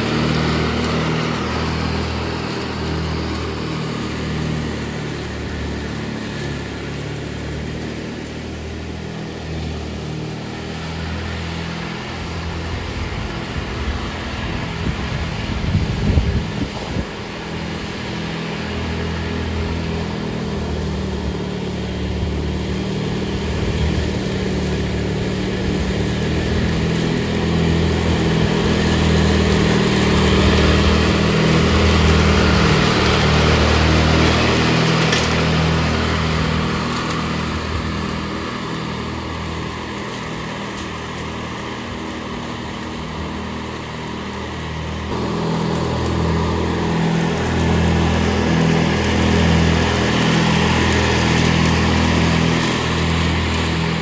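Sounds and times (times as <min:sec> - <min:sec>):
riding lawn mower engine: 0:00.0 - 0:54.0.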